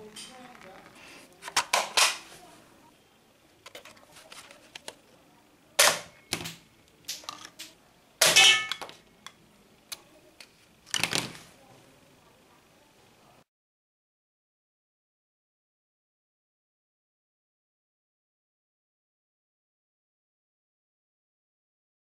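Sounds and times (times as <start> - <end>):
toy guns firing pops: 5.8 - 7.4.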